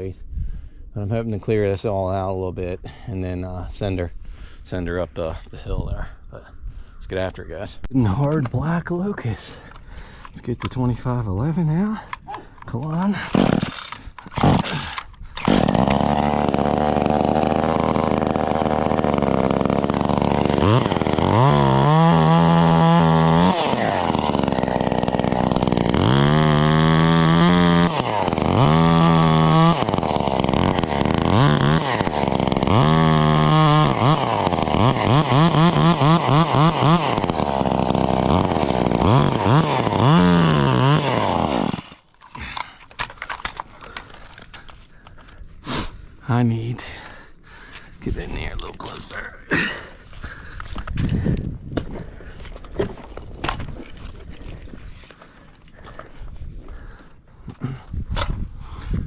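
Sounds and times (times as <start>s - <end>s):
chainsaw revving: 13.1s - 42.7s.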